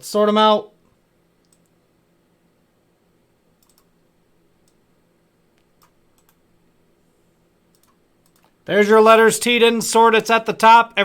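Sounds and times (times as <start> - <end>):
computer mouse clicks: 1.4 - 1.8, 3.6 - 3.9, 4.6 - 4.8, 5.6 - 6.4, 7.7 - 8.6.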